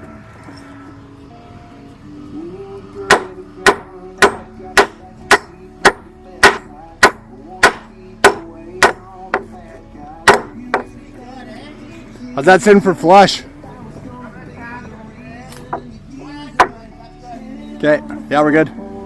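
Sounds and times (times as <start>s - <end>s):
hammer striking wood: 3.1s - 9.6s, 10.2s - 11.0s, 16.6s - 16.8s.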